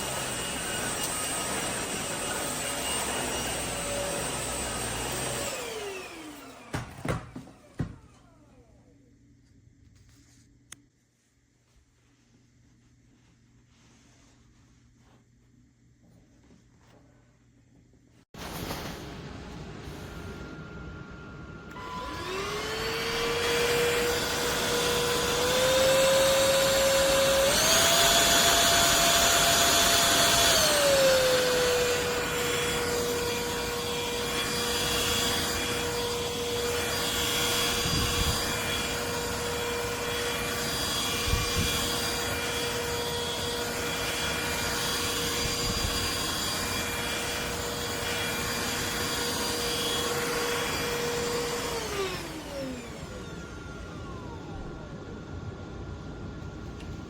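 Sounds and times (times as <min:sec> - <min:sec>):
vacuum cleaner motor whine: 0:00.0 - 0:09.1, 0:18.4 - 0:57.0.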